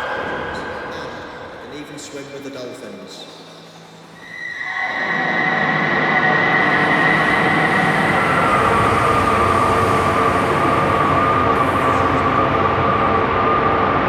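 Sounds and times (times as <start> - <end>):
high whining tone: 3.4 - 14.0
vehicle rumble: 6.1 - 14.0.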